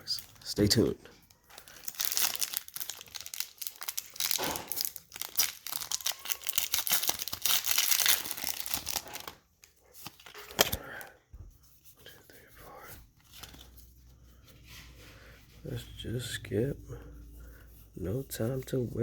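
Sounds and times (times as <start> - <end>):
foil wrapper crinkling and tearing: 1.3 - 10.9.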